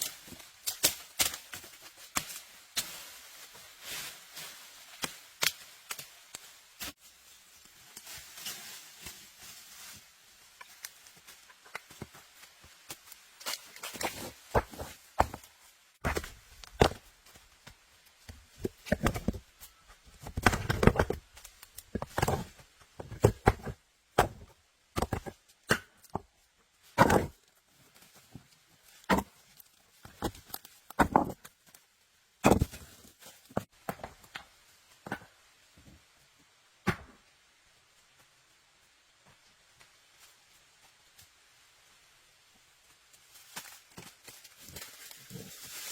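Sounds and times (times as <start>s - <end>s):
knocks and scrapes on wood and stone: 10.6s - 31.7s, 32.4s - 36.0s.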